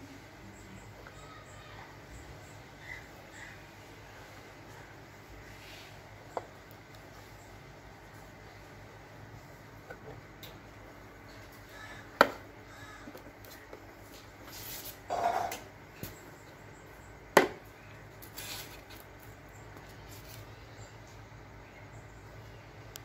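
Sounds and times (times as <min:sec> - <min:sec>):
scraping rustle: 0:13.5 - 0:15.5, 0:18.2 - 0:20.6.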